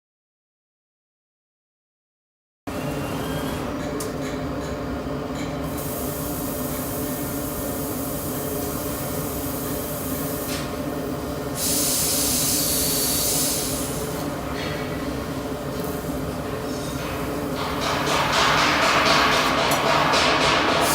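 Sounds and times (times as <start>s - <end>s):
laser cutter high hiss: 5.8s - 10.7s, 11.5s - 14.3s.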